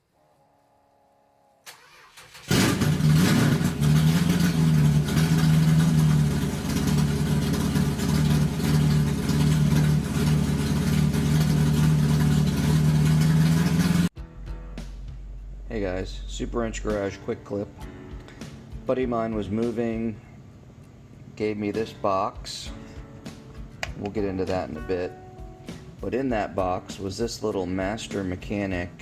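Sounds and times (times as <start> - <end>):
engine low rough drone: 2.5 - 14.1, 14.8 - 17.8.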